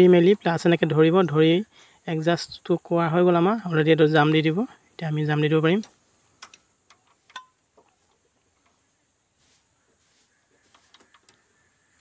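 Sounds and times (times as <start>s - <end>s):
metallic clicks of hand tools: 5.8s - 7.6s.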